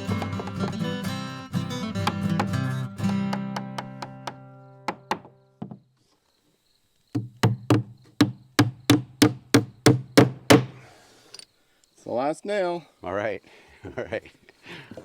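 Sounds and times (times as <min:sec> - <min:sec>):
hammer striking nail into wood: 0:02.0 - 0:05.8, 0:07.2 - 0:10.8.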